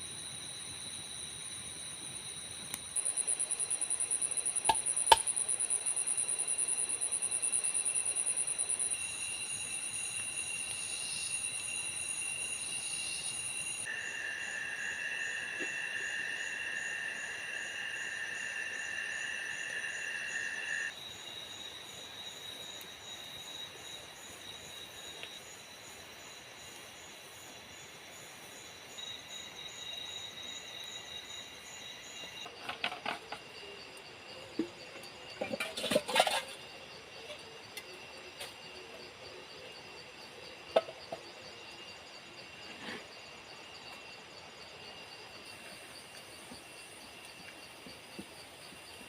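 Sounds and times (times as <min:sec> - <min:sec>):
insects trilling: 0:00.0 - 0:49.0.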